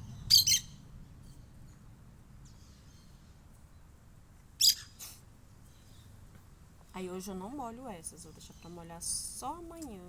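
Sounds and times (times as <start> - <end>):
parakeet chirping: 0.2 - 0.8, 4.6 - 5.0.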